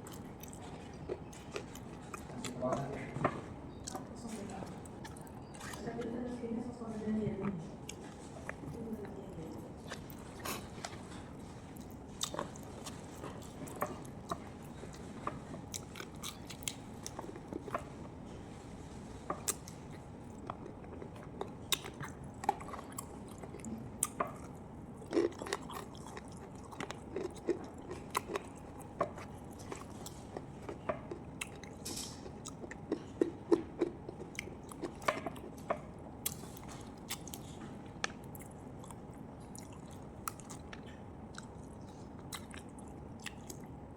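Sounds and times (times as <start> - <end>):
person biting and chewing food: 4.8 - 5.9, 19.4 - 43.7.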